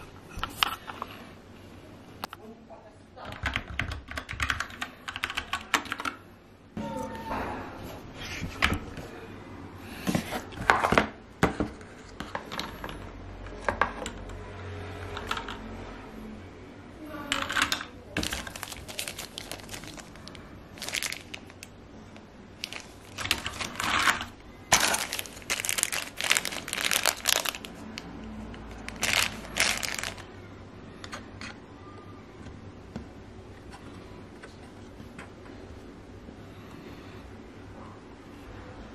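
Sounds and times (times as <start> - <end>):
plastic packaging crinkling: 18.2 - 30.4.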